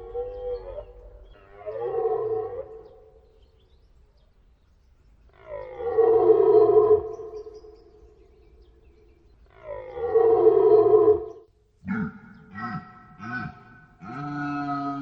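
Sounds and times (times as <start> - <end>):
deer stag roaring: 9.6 - 15.0.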